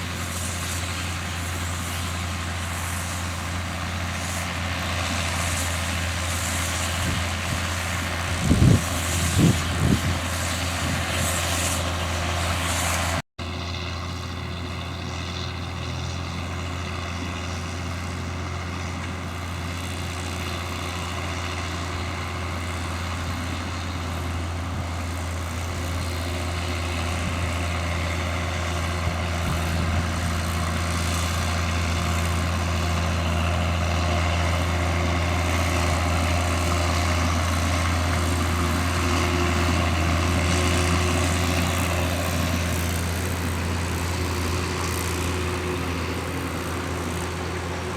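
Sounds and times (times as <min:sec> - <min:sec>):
tractor diesel engine under load: 0:00.0 - 0:47.9
baler working: 0:17.2 - 0:47.9.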